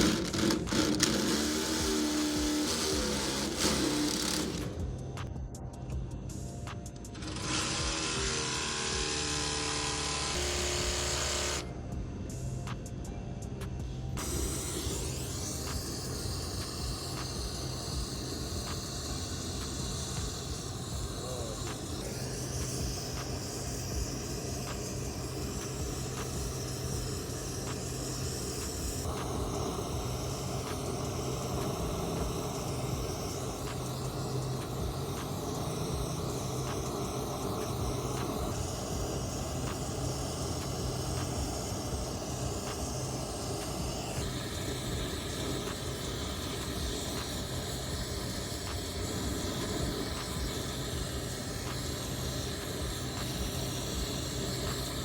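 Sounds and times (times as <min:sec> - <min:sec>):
torch flame hissing: 0:00.0 - 0:13.2, 0:13.8 - 0:55.0.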